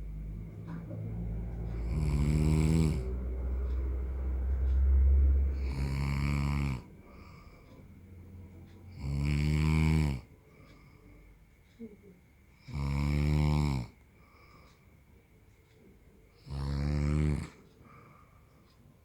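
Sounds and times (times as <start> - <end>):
quiet breath: 0.0 - 19.0
man snoring: 1.7 - 3.3, 5.5 - 7.4, 8.9 - 10.3, 12.6 - 14.0, 16.4 - 17.6.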